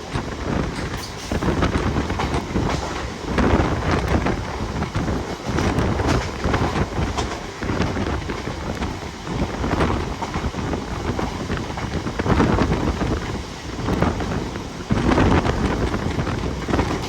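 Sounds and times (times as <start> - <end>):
train rumbling and rattling: 0.0 - 17.0
wind buffeting microphone: 0.0 - 17.0.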